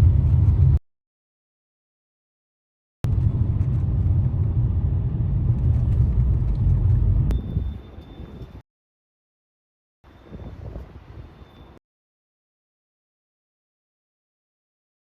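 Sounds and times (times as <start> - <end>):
low rumbling noise: 0.0 - 0.8, 3.0 - 8.6.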